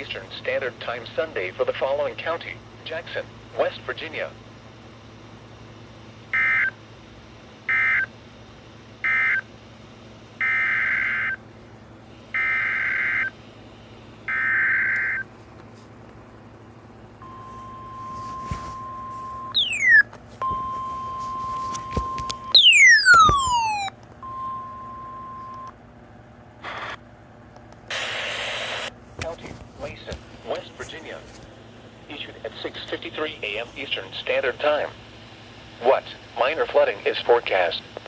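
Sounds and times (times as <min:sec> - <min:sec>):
loud falling whistles: 0:19.5 - 0:20.0, 0:22.6 - 0:23.9
short warbling data bursts: 0:19.5 - 0:20.0, 0:22.5 - 0:23.9
steady alert tone: 0:19.6 - 0:20.0, 0:22.5 - 0:23.9.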